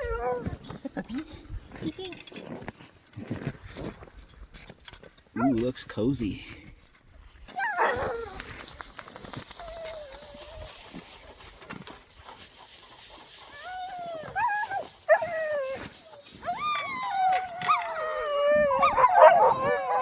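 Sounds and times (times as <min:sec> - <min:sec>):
dogs howling: 0:00.0 - 0:00.7, 0:07.5 - 0:08.7, 0:09.4 - 0:11.6, 0:13.4 - 0:20.0
dogs whining: 0:00.0 - 0:02.3, 0:05.4 - 0:05.7, 0:07.4 - 0:20.0.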